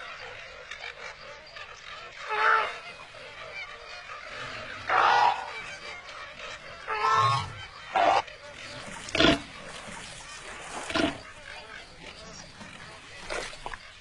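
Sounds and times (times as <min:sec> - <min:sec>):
animal calling loudly: 0:02.2 - 0:02.8, 0:04.3 - 0:06.0, 0:06.7 - 0:08.3.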